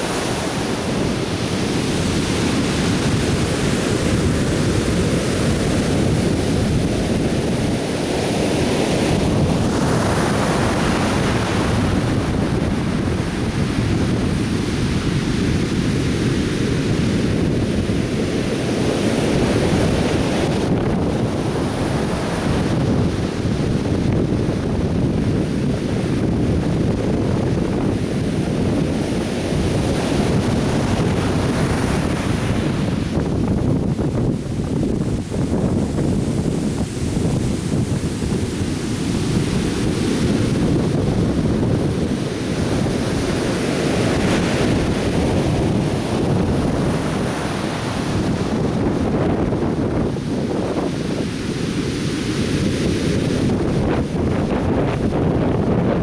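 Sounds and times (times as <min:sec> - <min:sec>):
ocean waves breaking on beach: 0:00.0 - 0:56.0.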